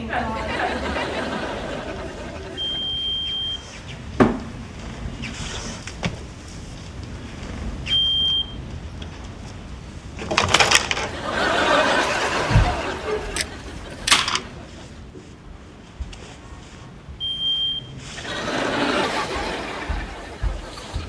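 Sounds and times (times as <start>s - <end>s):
thump: 4.2s - 4.8s
clattering and rustling: 4.2s - 5.0s, 12.0s - 14.8s.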